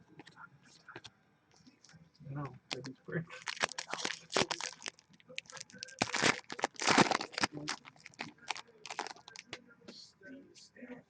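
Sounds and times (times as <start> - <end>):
wrappers crinkling and rustling: 2.7 - 9.6
wrappers ripping: 2.7 - 9.6.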